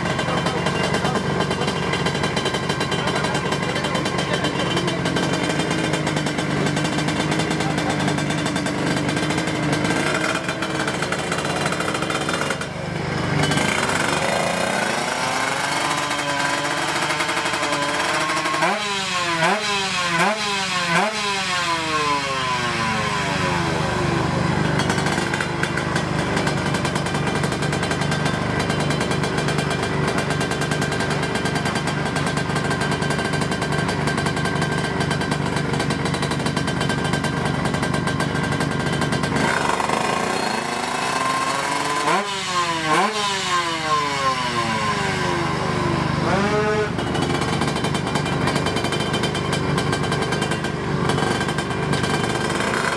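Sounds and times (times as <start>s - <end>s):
two-stroke motorcycle engines revving: 0.0s - 52.9s.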